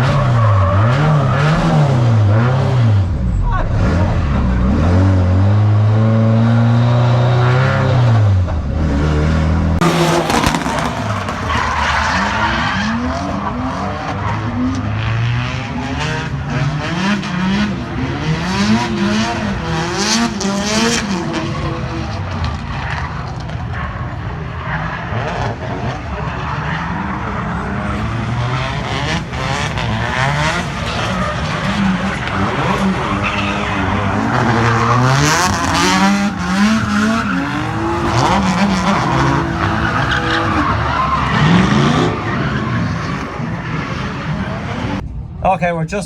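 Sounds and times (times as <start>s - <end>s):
car engine revving: 0.0s - 45.4s
tyres skidding on wet track: 9.8s - 45.0s.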